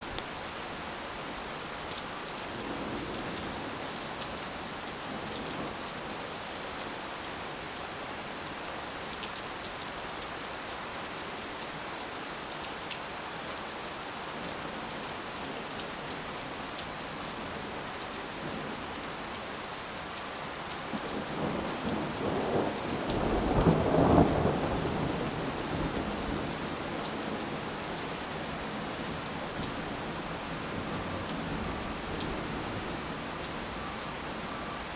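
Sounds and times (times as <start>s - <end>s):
heavy rain hissing: 16.5s - 34.9s.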